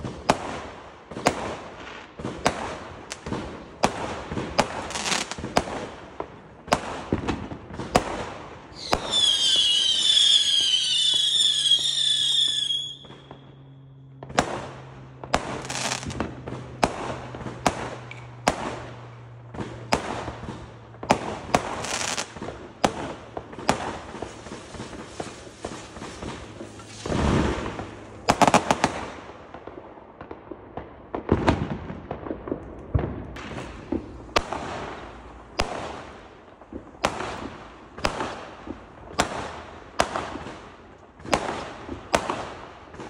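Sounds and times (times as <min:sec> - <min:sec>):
firework bangs and crackles: 0:00.0 - 0:43.0
whistling firework: 0:06.7 - 0:29.3.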